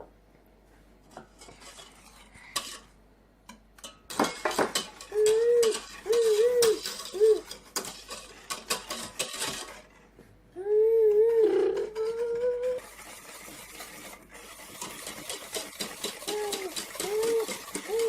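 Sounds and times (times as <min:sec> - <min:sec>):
hand whisk clinking in bowl: 0:03.5 - 0:09.9, 0:11.8 - 0:18.0.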